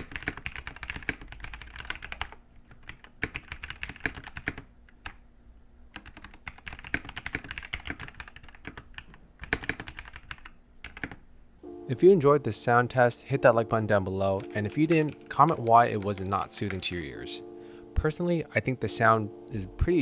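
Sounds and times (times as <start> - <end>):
mechanical keyboard typing: 0.0 - 5.2, 5.9 - 11.2, 12.4 - 17.4.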